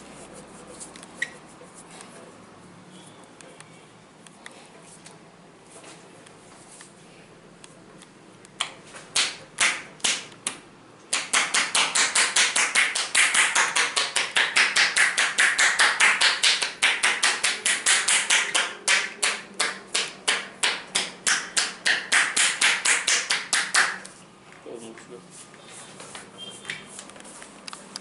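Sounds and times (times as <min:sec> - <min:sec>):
hands slapping a back: 0:08.6 - 0:24.2.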